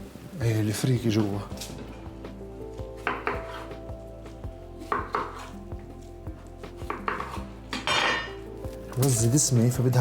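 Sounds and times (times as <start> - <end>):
background music with held notes: 0.0 - 10.0
knife chopping on cutting board: 3.0 - 3.8, 4.8 - 5.6, 6.8 - 8.0.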